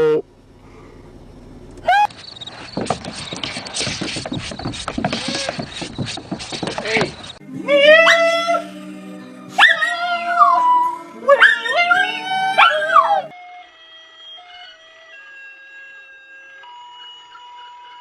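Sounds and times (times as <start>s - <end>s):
dog howling: 7.5s - 8.8s, 9.5s - 13.3s.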